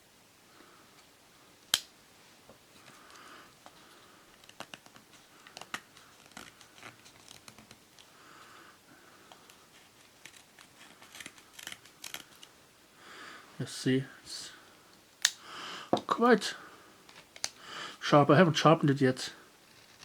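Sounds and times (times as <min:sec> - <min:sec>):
knife shaving wood: 0:04.3 - 0:08.1, 0:09.3 - 0:12.5, 0:19.6 - 0:20.0.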